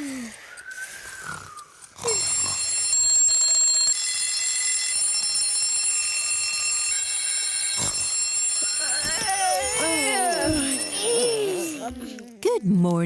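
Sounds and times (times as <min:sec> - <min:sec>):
cartoon snore whistles: 0:00.0 - 0:02.6
cartoon alarm clocks ringing: 0:00.0 - 0:12.3.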